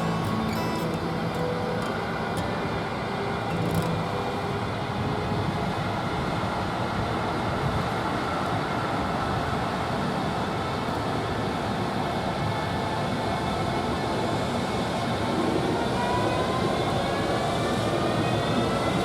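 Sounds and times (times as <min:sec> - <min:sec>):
rail depot rumble and hiss: 0:00.0 - 0:19.0.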